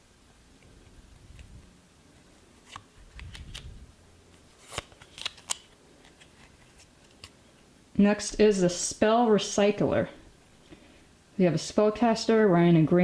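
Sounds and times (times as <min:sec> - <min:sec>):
card clicks and snaps: 0:02.6 - 0:03.7, 0:04.6 - 0:07.4
cards rustling: 0:02.6 - 0:07.6.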